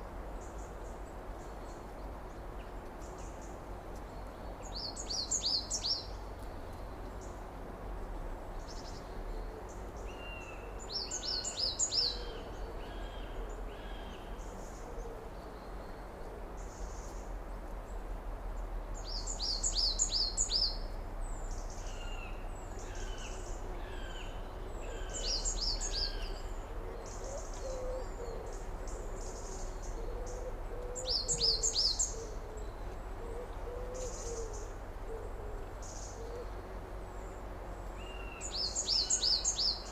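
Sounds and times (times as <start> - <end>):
low background rumble: 0.0 - 39.9
bird trilled song: 29.2 - 32.7.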